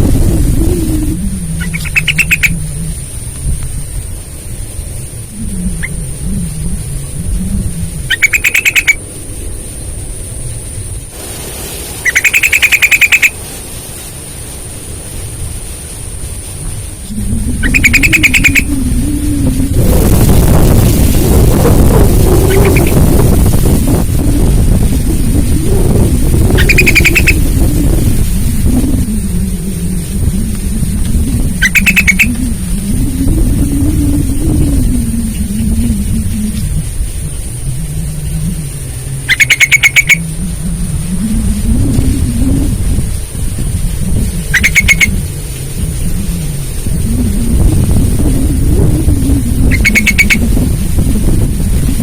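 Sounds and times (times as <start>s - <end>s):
low rumble: 0.0s - 52.0s
steady high hiss: 0.0s - 52.0s
bird singing rattling trills: 0.1s - 2.9s, 5.3s - 9.6s, 12.0s - 13.4s, 17.1s - 20.0s, 21.6s - 23.3s, 25.7s - 28.0s, 31.1s - 36.2s, 39.2s - 42.7s, 44.4s - 45.2s, 47.1s - 50.6s.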